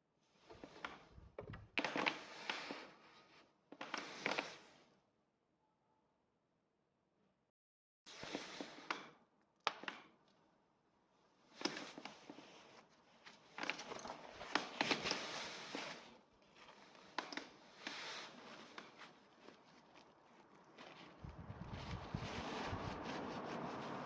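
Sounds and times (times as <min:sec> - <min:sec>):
rustling: 0:12.3 - 0:24.0.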